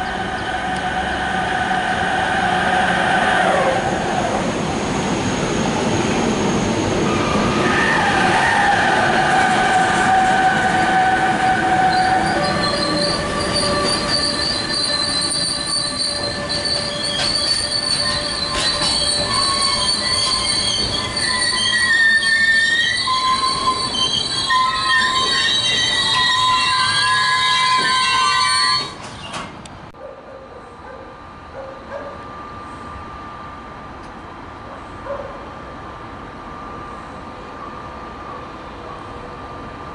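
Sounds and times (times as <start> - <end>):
train wheels squealing on rails: 0.0 - 29.6
train running noise: 0.0 - 39.9.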